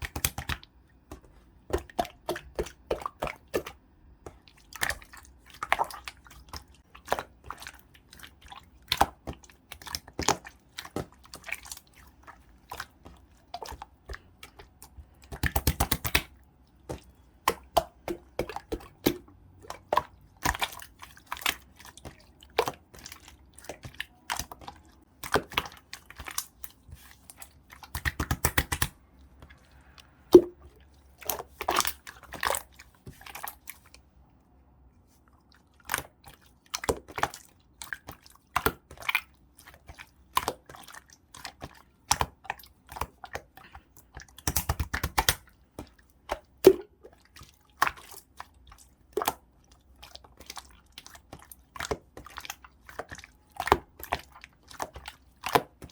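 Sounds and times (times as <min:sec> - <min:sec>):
slime squishing and popping: 0:15.2 - 0:16.4, 0:27.9 - 0:29.0, 0:44.3 - 0:46.9.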